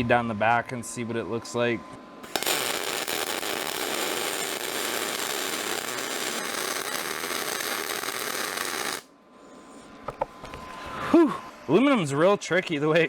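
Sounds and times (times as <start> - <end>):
welding arc crackling hiss: 2.2 - 9.1.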